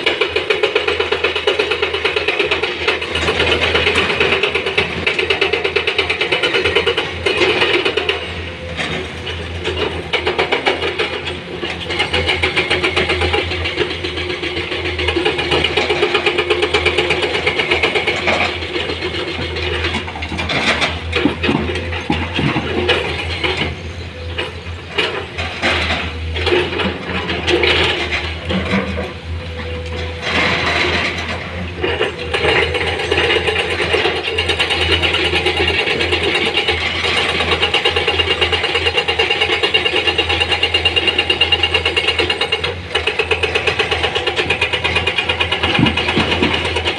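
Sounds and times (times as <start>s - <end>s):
heavy diesel engine rattling: 0.0s - 46.9s
irregular knocks and clattering: 17.7s - 23.7s, 44.4s - 46.9s.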